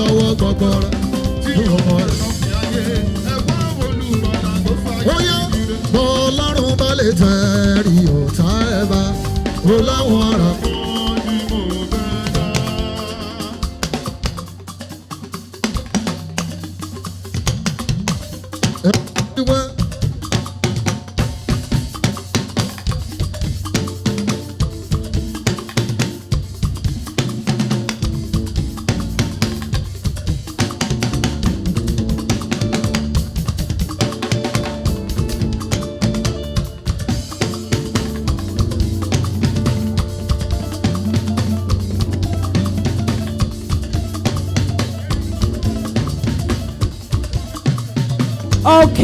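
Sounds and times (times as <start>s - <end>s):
bass line: 0.0s - 14.6s, 30.9s - 47.2s, 48.4s - 49.0s
drum kit and percussion beat: 0.0s - 49.0s.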